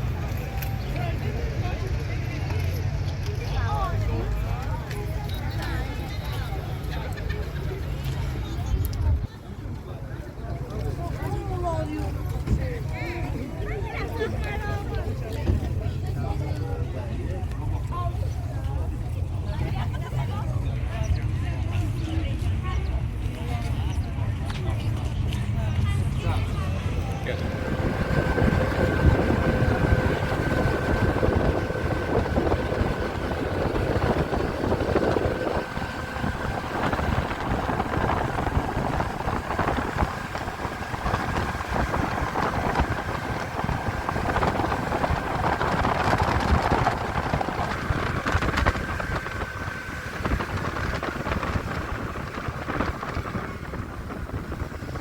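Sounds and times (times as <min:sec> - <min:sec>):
wind buffeting microphone: 0:25.2 - 0:55.0.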